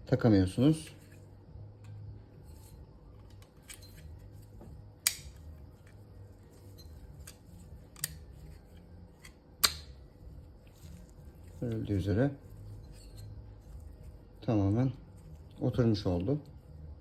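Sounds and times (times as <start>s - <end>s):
low steady hum: 0.0s - 17.0s
metallic clicks and taps: 5.0s - 6.0s, 7.2s - 8.2s, 9.2s - 9.9s.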